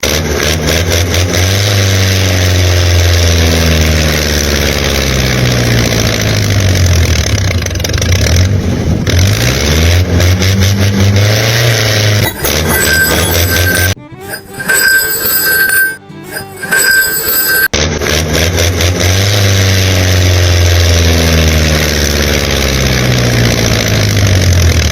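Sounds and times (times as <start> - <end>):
engine running and revving: 0.0 - 24.9.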